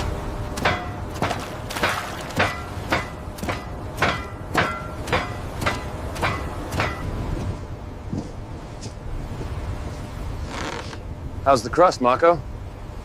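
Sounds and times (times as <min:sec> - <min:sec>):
steady low rumble: 0:00.0 - 0:13.0
metallic clanks: 0:00.6 - 0:07.5.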